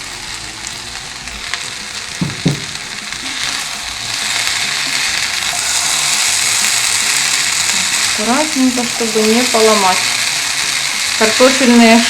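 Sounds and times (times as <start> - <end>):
vegetables sizzling in frying pan: 0.0 - 12.0
short knocks: 2.2 - 2.8.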